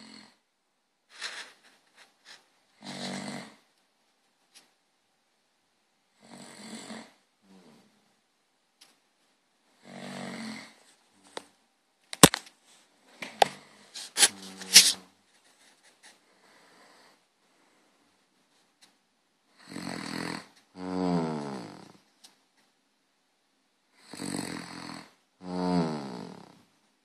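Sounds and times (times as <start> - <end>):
person snoring: 0.0 - 0.4, 2.8 - 3.6, 9.8 - 10.8, 19.6 - 22.0, 24.0 - 26.6.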